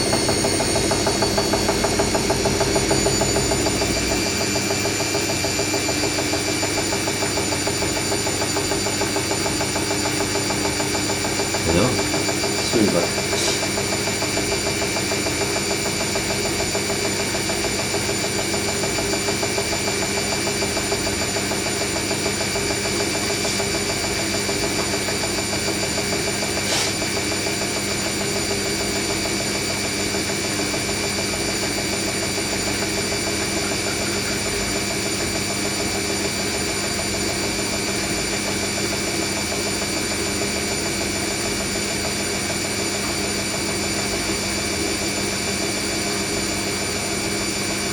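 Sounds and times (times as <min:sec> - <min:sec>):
washing machine spinning: 0:00.0 - 0:47.9.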